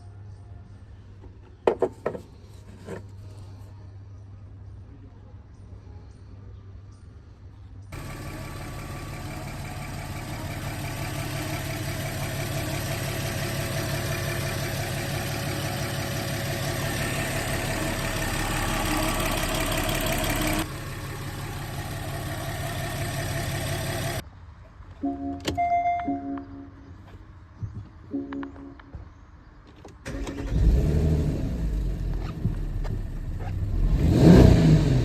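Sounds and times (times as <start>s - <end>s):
car engine idling: 8.0s - 24.2s, 30.1s - 35.0s.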